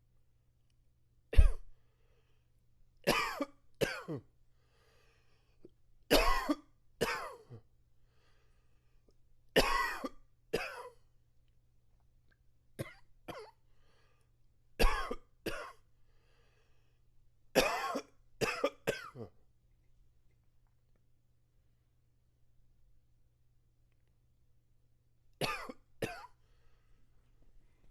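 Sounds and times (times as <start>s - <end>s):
faint breaths: 1.7s - 2.6s, 4.5s - 5.6s, 8.0s - 9.0s, 13.7s - 14.4s, 16.0s - 17.1s, 26.4s - 27.9s
man coughing: 3.1s - 4.3s, 6.1s - 7.6s, 9.6s - 10.9s, 14.8s - 15.8s, 17.6s - 19.4s, 25.4s - 26.4s.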